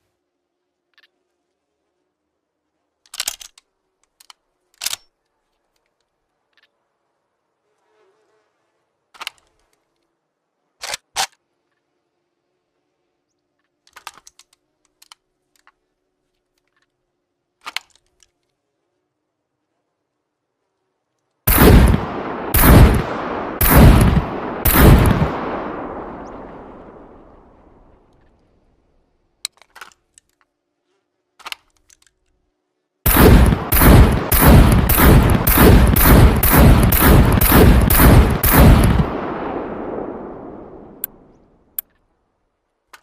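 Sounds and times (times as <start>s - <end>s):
rifle shots echoing: 21.5s - 27.8s, 33.1s - 41.3s.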